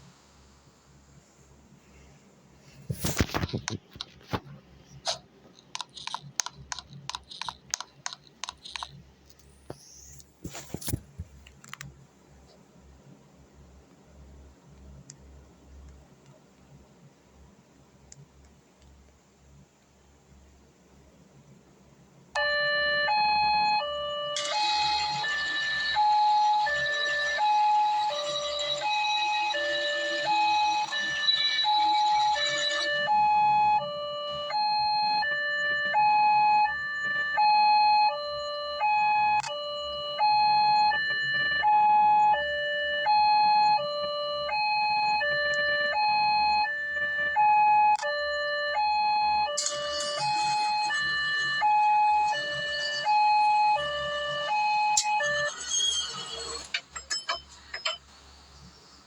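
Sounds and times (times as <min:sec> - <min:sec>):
clicks: 0:05.1 - 0:09.8
two-tone siren: 0:22.4 - 0:56.7.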